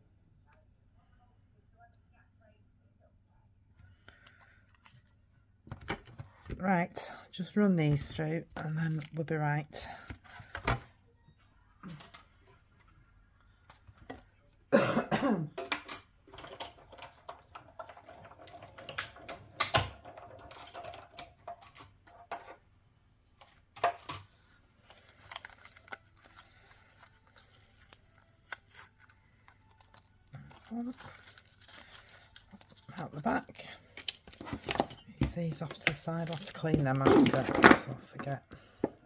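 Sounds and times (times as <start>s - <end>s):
loud cough-like sound: 14.7s - 15.6s.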